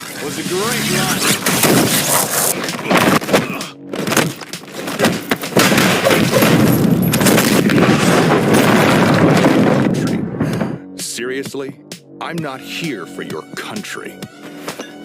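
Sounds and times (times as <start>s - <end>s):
heavy booming impacts: 5.1s - 11.0s.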